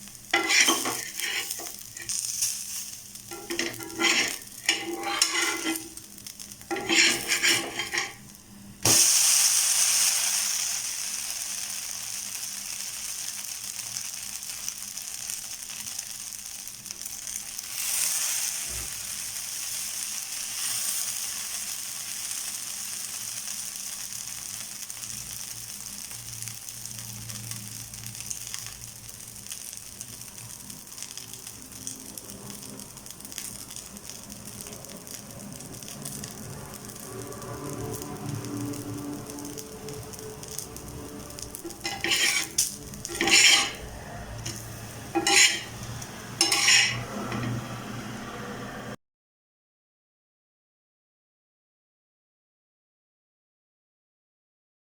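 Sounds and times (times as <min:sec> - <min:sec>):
batter sizzling on a griddle: 0:00.0 - 0:49.0
utensil scraping a griddle: 0:00.3 - 0:02.5, 0:03.3 - 0:08.3, 0:40.5 - 0:47.6.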